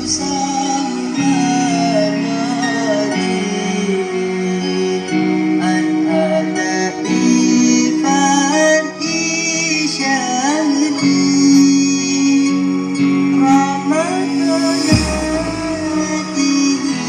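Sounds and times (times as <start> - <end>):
steady bass line: 0.0 - 1.2, 14.0 - 16.8
sliding guitar-like melody: 0.0 - 17.0.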